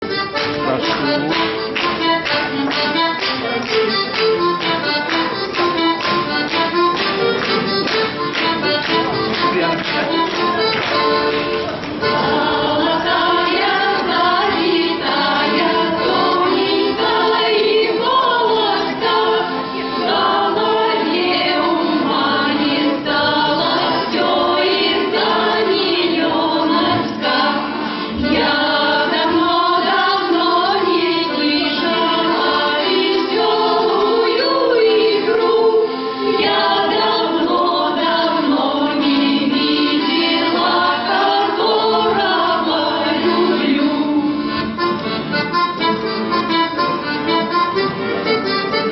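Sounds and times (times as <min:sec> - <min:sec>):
instrumental accompaniment: 0:00.0 - 0:48.9
choir singing: 0:08.5 - 0:44.7.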